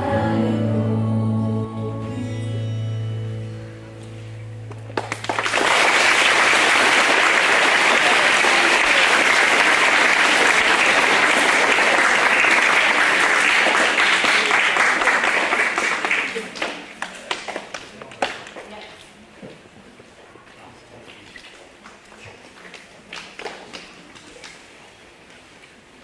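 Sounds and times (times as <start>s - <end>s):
children applauding: 4.9s - 17.8s.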